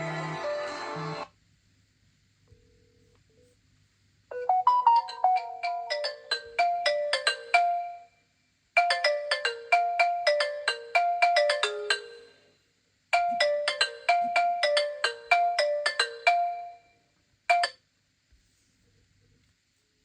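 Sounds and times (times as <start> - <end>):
phone ringtone chiming melody: 4.3 - 8.1, 8.8 - 12.4, 13.2 - 17.8.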